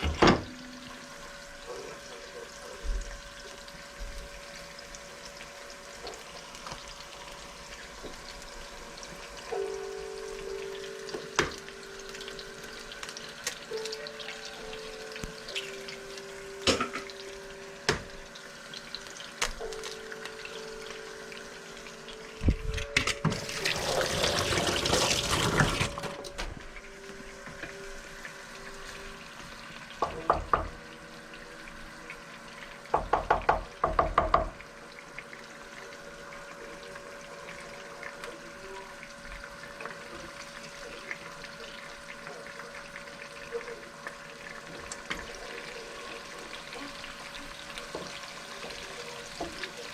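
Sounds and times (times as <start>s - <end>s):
food sizzling in a frying pan: 0.0s - 49.9s
steady hum: 6.8s - 24.0s.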